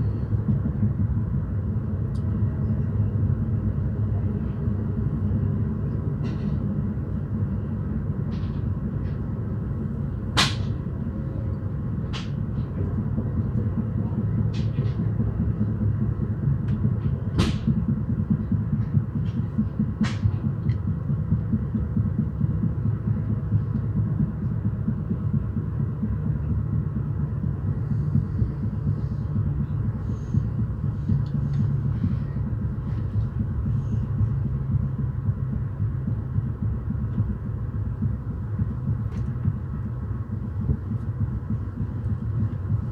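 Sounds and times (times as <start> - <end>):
train rumble and hum: 0.0 - 42.9
sharp train clicks: 10.3 - 42.9.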